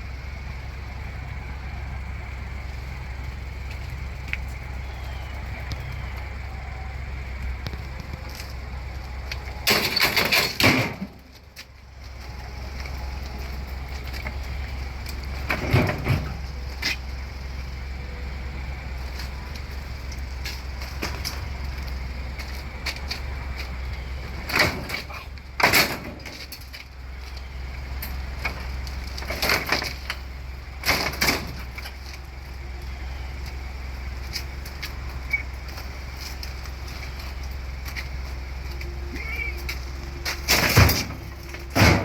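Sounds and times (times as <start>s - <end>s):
vehicle rumbling on the move: 0.0s - 42.0s
sharp knocks and clunks: 40.2s - 42.0s.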